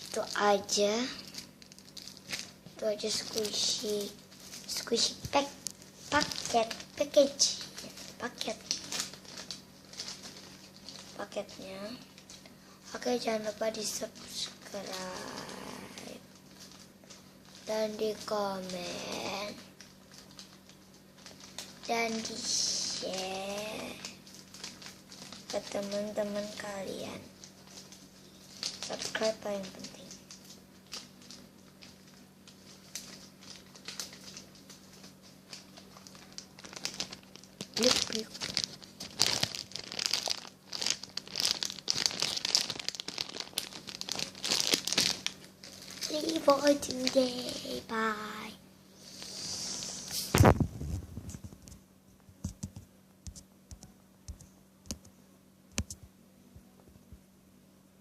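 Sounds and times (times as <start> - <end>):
low electrical hum: 0.0 - 58.0
packaging crinkling and taps: 4.4 - 11.2, 51.3 - 55.1.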